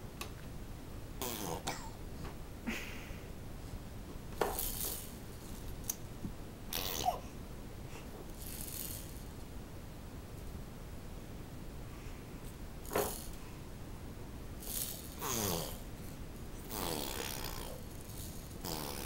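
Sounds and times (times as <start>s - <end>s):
baby blowing noises: 1.2s - 1.7s, 6.7s - 7.3s, 14.6s - 15.8s, 16.7s - 17.8s, 18.6s - 19.0s
baby cooing: 6.7s - 7.4s, 16.7s - 17.8s, 18.6s - 19.0s.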